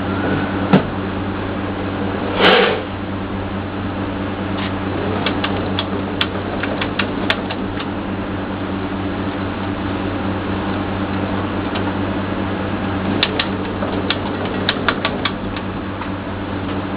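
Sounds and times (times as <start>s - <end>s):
friction feeder motor hum: 0.0s - 16.9s
short swish: 2.2s - 3.0s.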